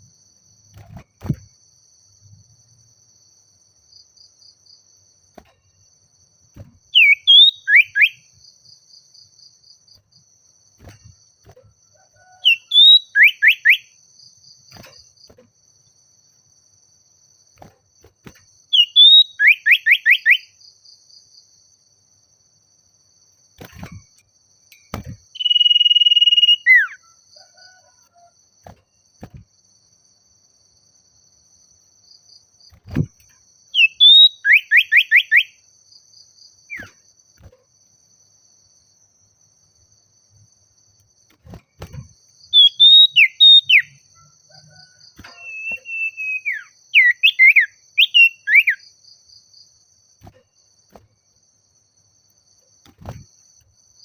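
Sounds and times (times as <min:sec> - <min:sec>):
faint insect trill: 0:00.0 - 0:54.0
bird singing whistles: 0:06.9 - 0:08.3, 0:12.4 - 0:13.9, 0:18.7 - 0:20.5, 0:25.3 - 0:27.0, 0:33.8 - 0:35.6, 0:36.7 - 0:37.0, 0:42.5 - 0:44.0, 0:45.2 - 0:48.8.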